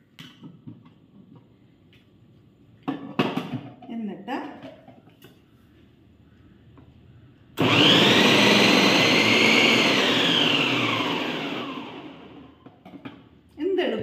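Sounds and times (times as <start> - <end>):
food processor motor whining: 7.6 - 12.6.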